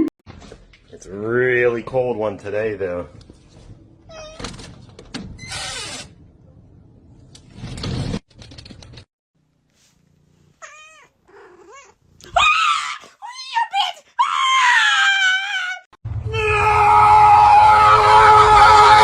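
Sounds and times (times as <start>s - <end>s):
cat meowing: 4.1s - 4.4s, 10.6s - 12.0s.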